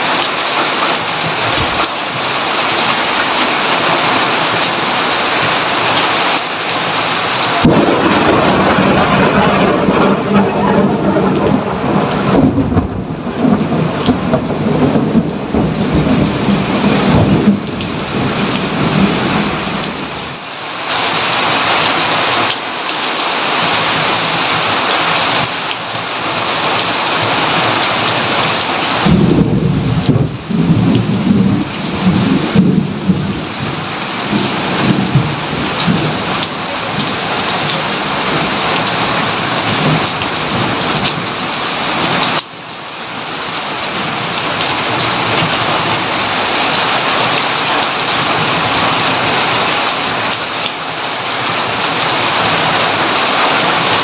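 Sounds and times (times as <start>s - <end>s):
heavy rain hissing: 0.0s - 54.0s
thunder rumbling: 7.3s - 20.4s, 26.6s - 42.3s.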